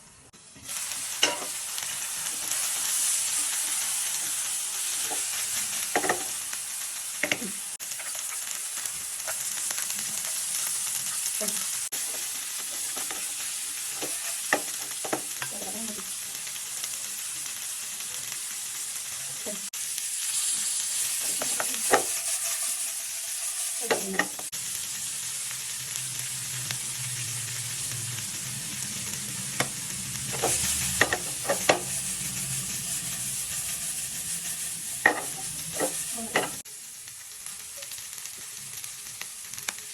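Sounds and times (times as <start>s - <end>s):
noodles sizzling in a pan: 0.0s - 39.9s
utensil scraping a pan: 30.3s - 36.6s.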